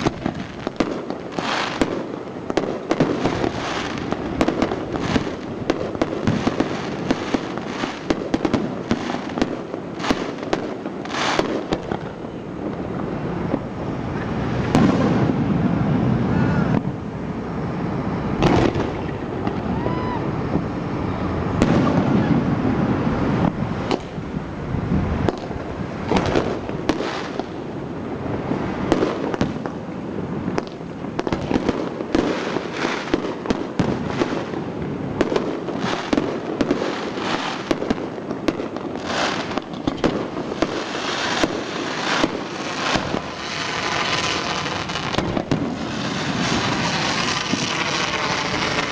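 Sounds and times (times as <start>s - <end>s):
firework crackling: 0.0s - 48.9s
firework shells bursting: 35.2s - 48.9s.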